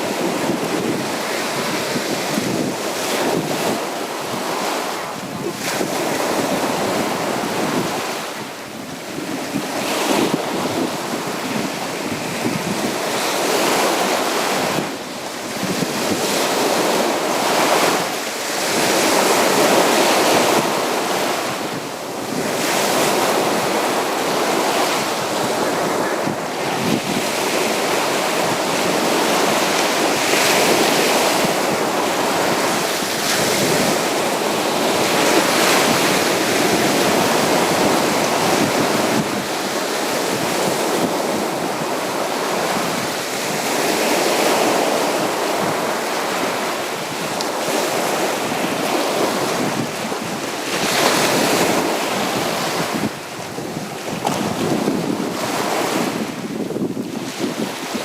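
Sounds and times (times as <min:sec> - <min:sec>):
waves breaking on beach: 0:00.0 - 0:58.0.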